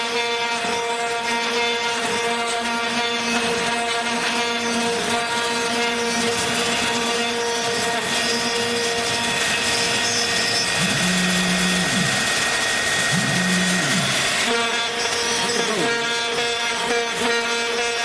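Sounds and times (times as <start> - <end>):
router spindle cutting metal: 0.0 - 18.0
low hum ramping: 10.6 - 14.6.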